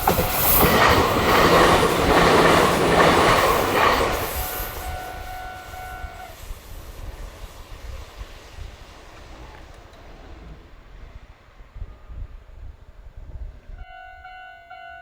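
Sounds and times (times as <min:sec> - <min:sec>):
electric train running past: 0:00.0 - 0:15.0.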